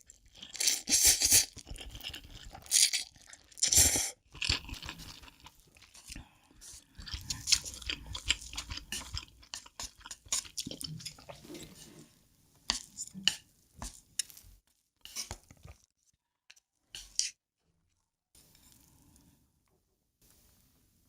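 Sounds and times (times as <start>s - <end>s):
wet chewing of noodles: 0.0s - 11.7s.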